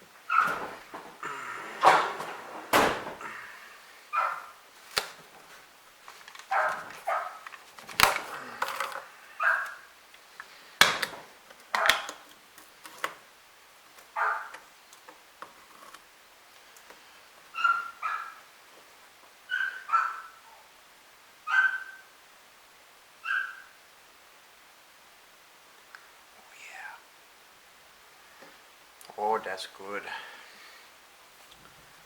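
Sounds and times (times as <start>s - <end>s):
dog barking and yipping: 0.3s - 0.8s, 4.1s - 4.6s, 6.5s - 7.5s, 9.4s - 9.9s, 14.1s - 14.6s, 17.5s - 18.4s, 19.5s - 20.6s, 21.5s - 22.1s, 23.2s - 23.8s
handling clicks and knocks: 6.1s - 9.8s, 10.8s - 13.2s.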